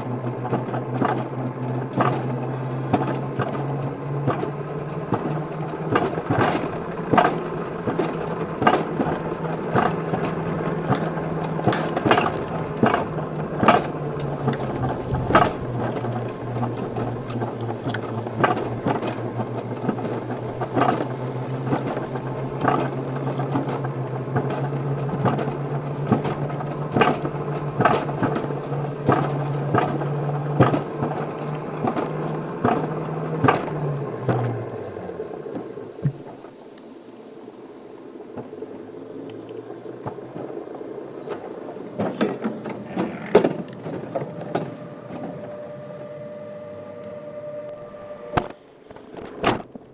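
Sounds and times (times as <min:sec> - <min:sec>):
coaster sled mechanical hum: 0:00.0 - 0:49.9.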